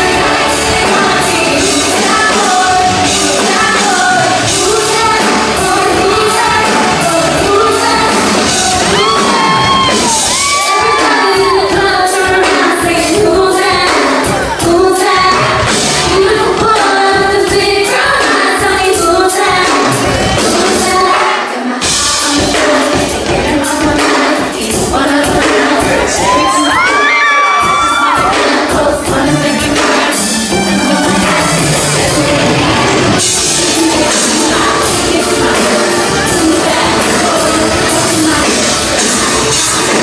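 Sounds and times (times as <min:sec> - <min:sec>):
live pop music with singer: 0:00.0 - 0:40.0
audience shouting: 0:08.5 - 0:11.8, 0:25.8 - 0:28.6.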